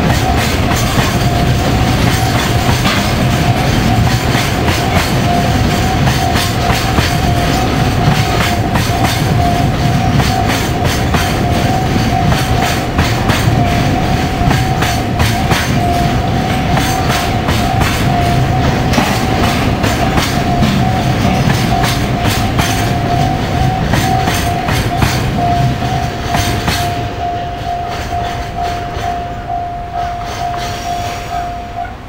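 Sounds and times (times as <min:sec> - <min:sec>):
level crossing warning bell: 0:00.0 - 0:32.0
low train rumble: 0:00.0 - 0:32.0
train wheels clacking on rails: 0:00.0 - 0:32.0.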